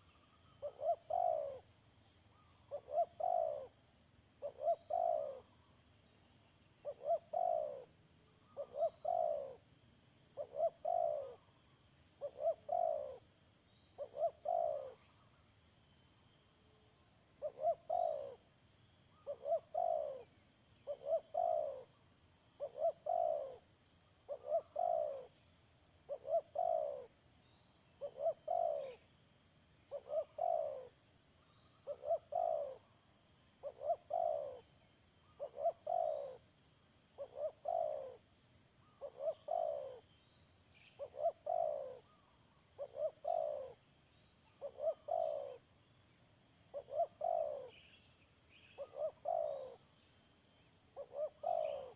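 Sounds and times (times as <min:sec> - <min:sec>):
dove cooing: 0:00.0 - 0:01.7, 0:02.3 - 0:03.8, 0:04.4 - 0:05.5, 0:06.8 - 0:07.9, 0:08.5 - 0:09.6, 0:10.4 - 0:11.5, 0:12.2 - 0:13.2, 0:14.0 - 0:15.0, 0:17.4 - 0:18.4, 0:19.2 - 0:21.9, 0:22.6 - 0:23.7, 0:24.3 - 0:25.4, 0:26.1 - 0:27.1, 0:28.0 - 0:29.0, 0:29.9 - 0:31.0, 0:31.8 - 0:32.8, 0:33.6 - 0:34.7, 0:35.3 - 0:36.4, 0:37.2 - 0:38.2, 0:38.9 - 0:40.0, 0:41.0 - 0:43.8, 0:44.6 - 0:45.6, 0:46.7 - 0:48.0, 0:48.8 - 0:49.9, 0:51.0 - 0:51.9
faint high hiss: 0:00.0 - 0:51.9.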